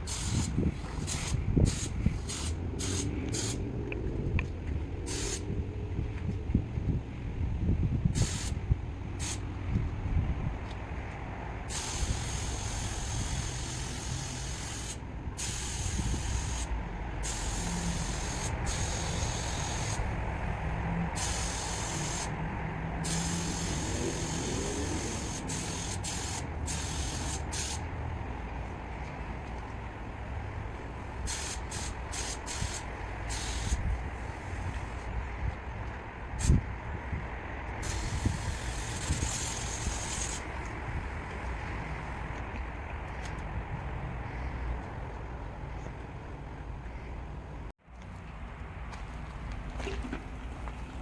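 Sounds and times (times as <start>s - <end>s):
aerosol spray can hissing: 0.1s - 3.6s, 11.7s - 16.7s, 17.3s - 20.0s, 21.2s - 22.3s, 23.1s - 27.8s, 31.3s - 33.8s.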